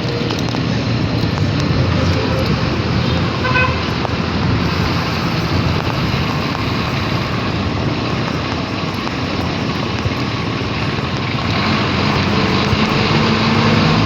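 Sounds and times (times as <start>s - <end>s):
road noise: 0.0s - 14.0s
wind buffeting microphone: 0.0s - 14.0s.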